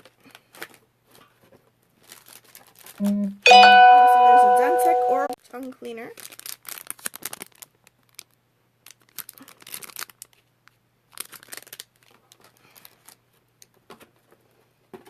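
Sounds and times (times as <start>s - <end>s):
plastic packaging crinkling: 0.0s - 3.1s, 5.6s - 14.3s.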